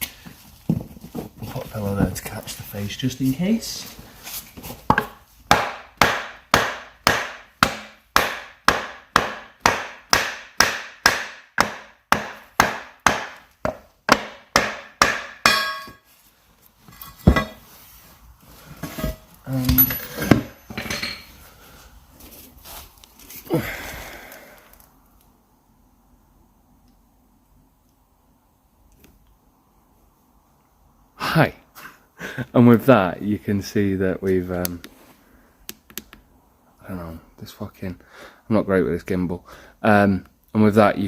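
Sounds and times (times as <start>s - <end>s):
hammer striking metal rim: 14.2s - 16.0s.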